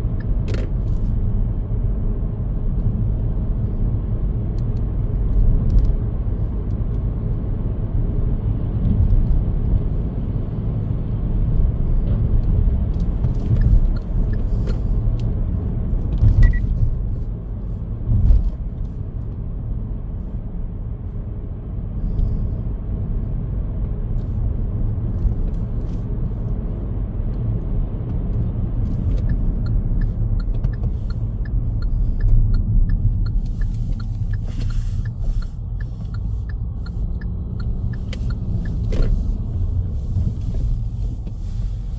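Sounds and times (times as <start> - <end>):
car tyres and engine rumble: 0.0 - 41.9
faint regular ticking: 28.9 - 39.6.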